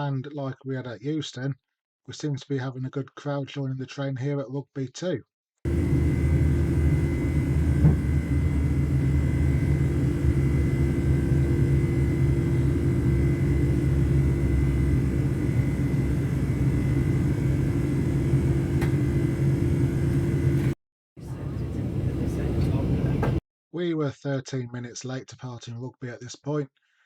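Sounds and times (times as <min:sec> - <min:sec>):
faint high equipment whine: 0:05.7 - 0:23.4
train interior rumble and hum: 0:05.7 - 0:23.4.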